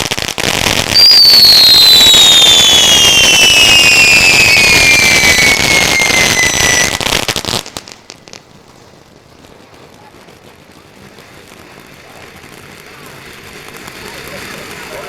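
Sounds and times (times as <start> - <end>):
firework fountain hissing crackle: 0.0 - 15.0
falling whistle: 0.9 - 7.0.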